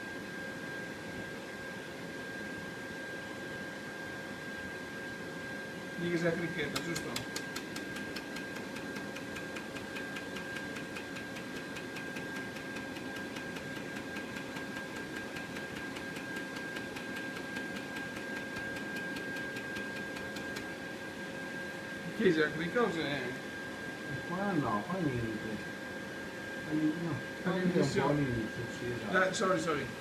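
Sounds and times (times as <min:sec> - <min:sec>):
machine humming: 0:05.8 - 0:30.0
laser welder ticking: 0:06.7 - 0:20.7.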